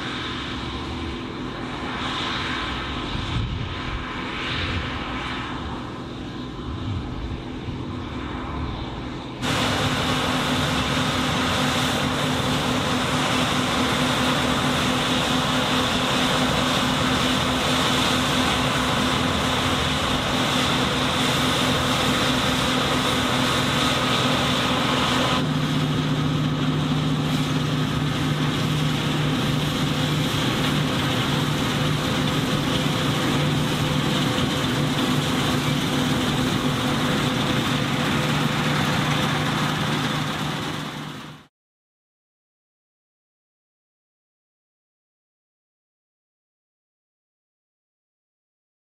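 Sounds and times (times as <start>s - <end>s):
combine harvester running: 0.0s - 41.5s.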